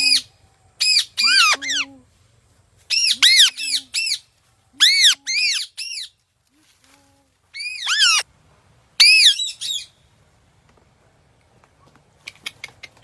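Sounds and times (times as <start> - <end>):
parrot squawking: 0.0 - 1.8, 2.9 - 4.2, 4.8 - 6.0, 7.6 - 8.2, 9.0 - 9.9.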